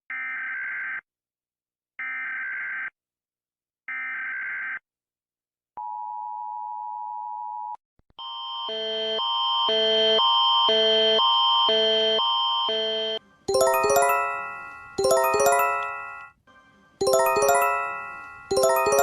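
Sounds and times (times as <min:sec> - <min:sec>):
multi-tone alarm: 0:08.2 - 0:16.4, 0:17.0 - 0:19.0
clicks: 0:14.6 - 0:16.3.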